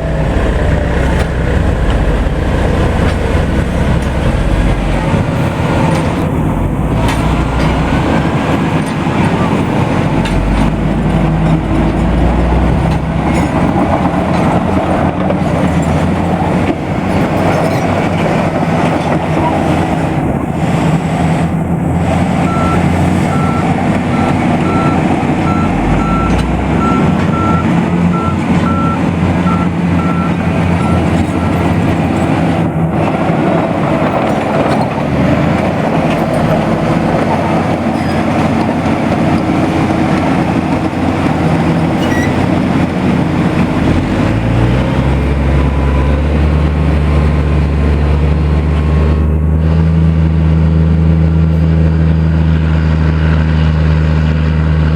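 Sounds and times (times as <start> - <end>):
truck diesel engine running: 0.0 - 54.9
reversing alarm beeping: 22.4 - 31.9.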